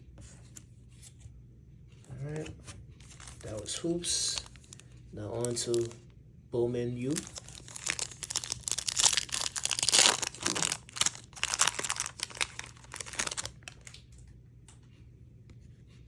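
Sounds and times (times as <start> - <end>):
wrapper torn and crinkled: 3.0 - 6.0, 7.1 - 14.0.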